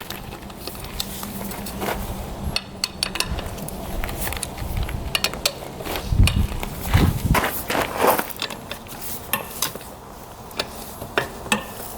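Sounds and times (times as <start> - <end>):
low steady hum: 0.0 - 11.9.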